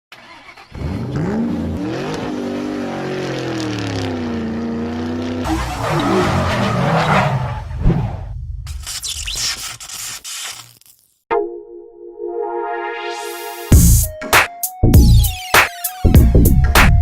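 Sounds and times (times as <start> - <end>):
car engine revving: 0.3 - 8.3.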